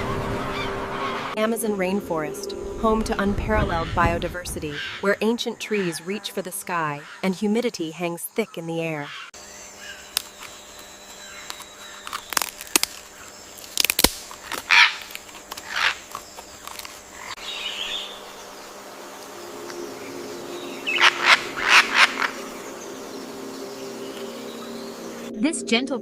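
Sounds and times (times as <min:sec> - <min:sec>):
harsh bird calls: 0:00.0 - 0:01.4, 0:04.6 - 0:07.5, 0:14.4 - 0:25.3
steady background drone: 0:00.0 - 0:07.7, 0:09.1 - 0:26.0.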